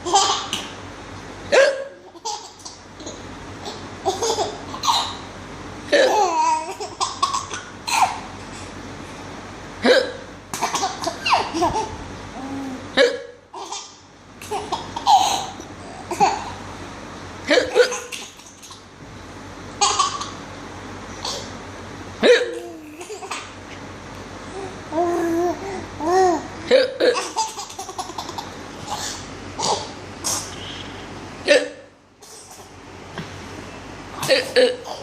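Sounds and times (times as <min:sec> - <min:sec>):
woman hiccuping: 0:01.5 - 0:01.9, 0:09.8 - 0:10.2, 0:12.9 - 0:13.4, 0:22.2 - 0:22.6, 0:26.7 - 0:27.2, 0:31.5 - 0:31.9.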